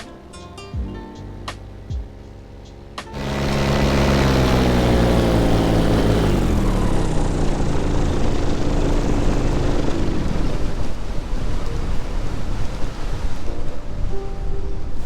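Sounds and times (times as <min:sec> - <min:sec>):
paramotor engine and propeller: 0:02.2 - 0:13.4
wind rush on microphone: 0:09.8 - 0:15.0.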